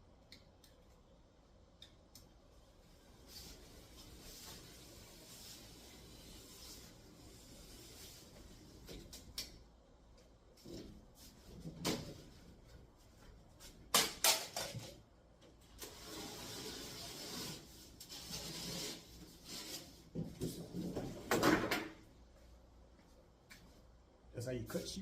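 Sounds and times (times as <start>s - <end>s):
knife scraping drywall paper: 15.8s - 20.0s.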